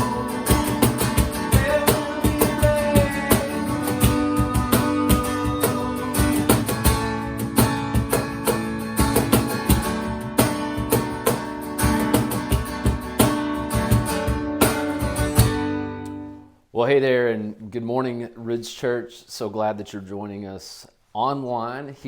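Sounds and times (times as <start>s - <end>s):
strummed guitar: 0.0s - 16.4s.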